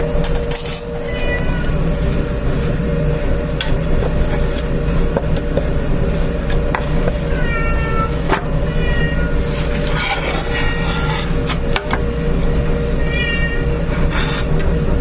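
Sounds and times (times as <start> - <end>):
machine hum: 0.0 - 15.0
cat meowing: 1.0 - 1.8, 7.3 - 9.4, 10.4 - 11.2, 13.0 - 13.7.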